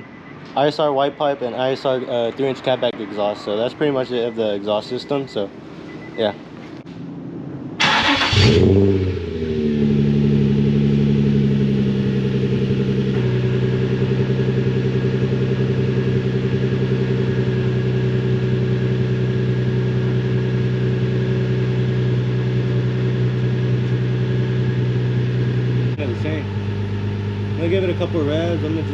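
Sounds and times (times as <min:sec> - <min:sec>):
car engine idling: 0:07.8 - 0:28.9.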